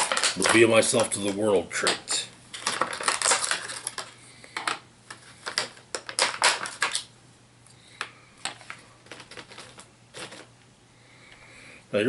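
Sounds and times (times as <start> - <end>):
plastic figures clicking and tapping: 0.0 - 2.0, 2.6 - 7.1.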